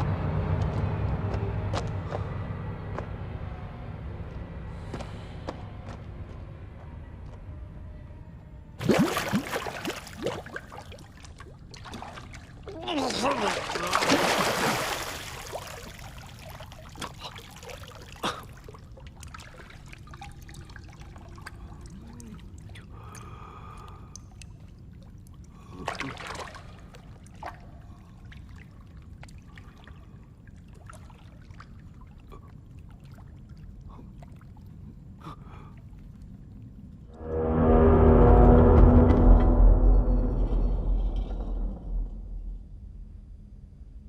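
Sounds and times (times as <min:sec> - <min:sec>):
steady low rumble: 0:00.0 - 0:08.8, 0:36.2 - 0:44.0
water splash: 0:08.8 - 0:21.5
water trickling and dripping: 0:08.8 - 0:37.1.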